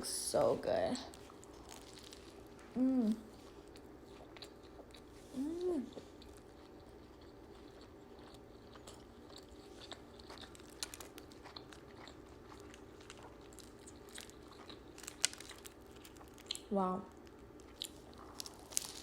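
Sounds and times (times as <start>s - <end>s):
person chewing food: 1.1s - 19.0s
person humming: 2.7s - 3.3s, 5.4s - 5.9s.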